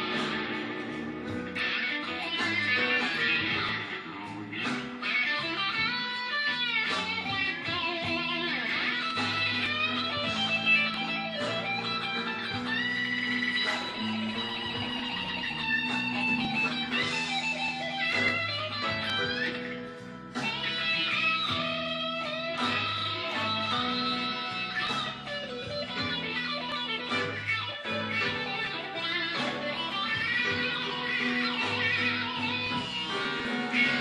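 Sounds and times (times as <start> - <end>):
electric blues guitar solo: 0.0 - 34.0
repeating low backing line: 6.9 - 34.0.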